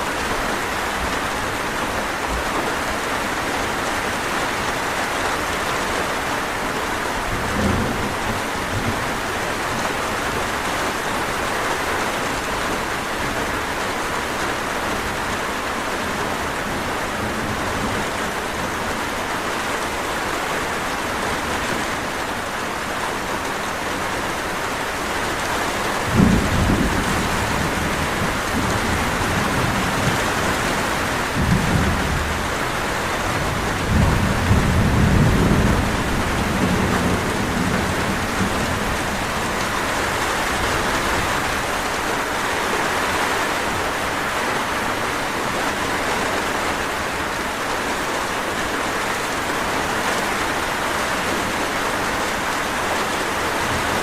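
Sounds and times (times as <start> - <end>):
heavy rain: 0.0 - 54.0
distant thunder rumbling: 26.0 - 42.0.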